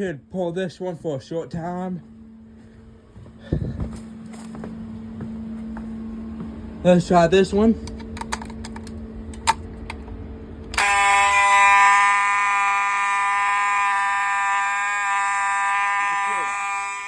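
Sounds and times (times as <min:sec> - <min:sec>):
fire alarm horn buzzing: 0:10.7 - 0:17.0.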